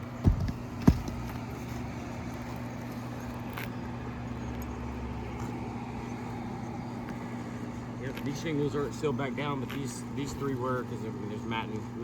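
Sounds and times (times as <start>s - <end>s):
low machine hum: 0.0s - 12.0s.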